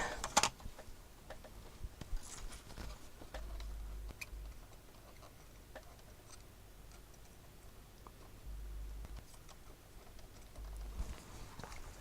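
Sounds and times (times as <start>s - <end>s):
low hum: 8.4s - 9.3s.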